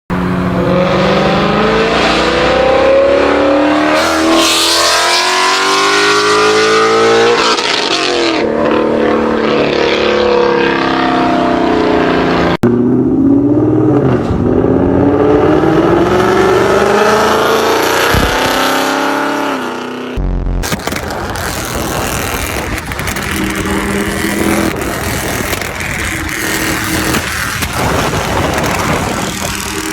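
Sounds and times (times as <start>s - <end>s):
car engine accelerating hard: 0.1s - 29.9s
supercharger whine: 19.6s - 29.9s.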